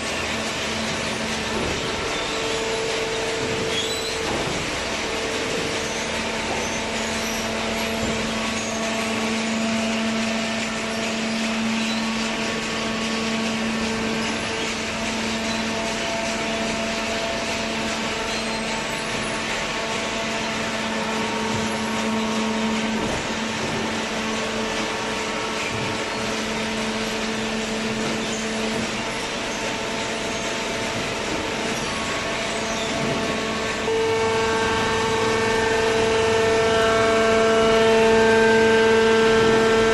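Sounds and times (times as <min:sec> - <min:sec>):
hydraulic press machine hum: 0:00.0 - 0:39.9.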